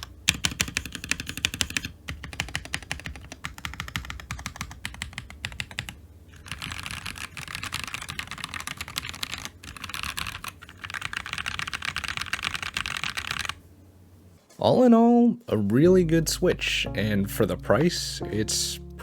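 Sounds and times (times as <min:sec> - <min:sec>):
mechanical keyboard typing: 0:00.0 - 0:13.6.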